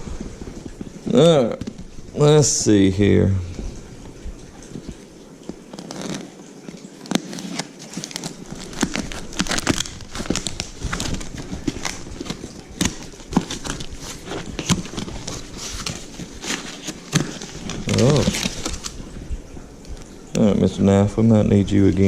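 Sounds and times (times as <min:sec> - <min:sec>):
cardboard rustling and tearing: 0:05.5 - 0:20.2.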